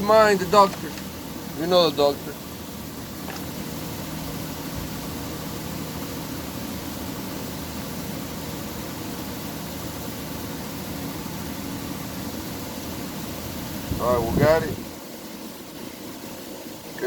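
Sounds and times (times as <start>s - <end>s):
low machine hum: 0.0s - 17.0s.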